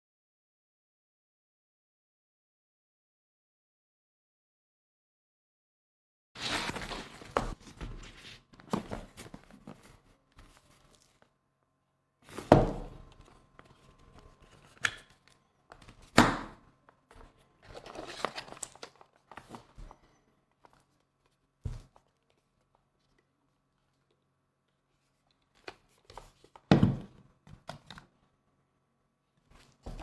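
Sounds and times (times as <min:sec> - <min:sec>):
handling rustling and crinkling: 0:06.4 - 0:11.3, 0:16.9 - 0:24.2.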